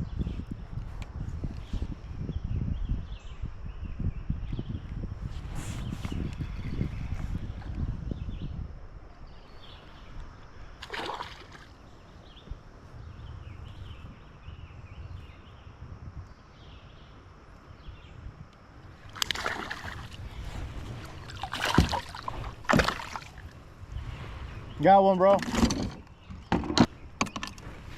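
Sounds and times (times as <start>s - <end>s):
river water sloshing against kayak: 9.6s - 12.6s, 18.8s - 27.9s
sharp splashes or knocks: 10.8s - 11.7s, 19.1s - 20.2s, 21.2s - 23.5s.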